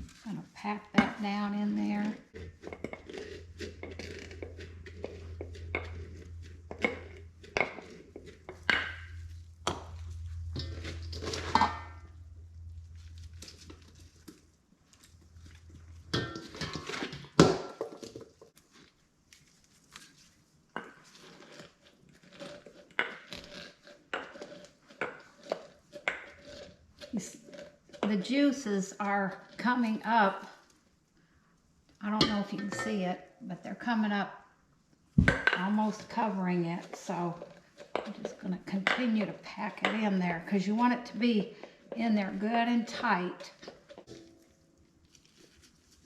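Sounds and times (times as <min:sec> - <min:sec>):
low hum: 0:03.3 - 0:16.6
cabbage packed into glass jar: 0:12.8 - 0:28.3, 0:41.2 - 0:46.0.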